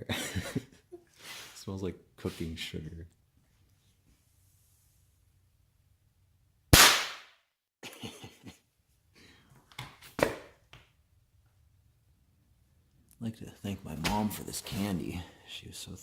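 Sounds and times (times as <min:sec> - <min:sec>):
pistol firing sharp pop: 0:06.8 - 0:07.3.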